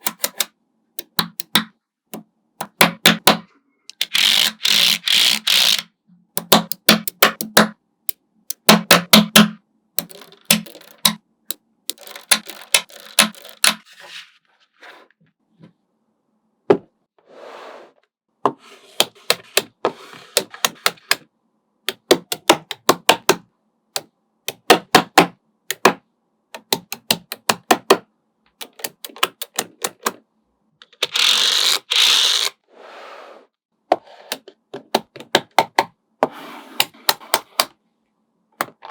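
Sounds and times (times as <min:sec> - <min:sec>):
magnetic balls clicking together: 0:00.0 - 0:01.7, 0:06.4 - 0:07.8, 0:08.5 - 0:13.8
magnetic balls rattling: 0:10.0 - 0:11.2, 0:11.9 - 0:13.8.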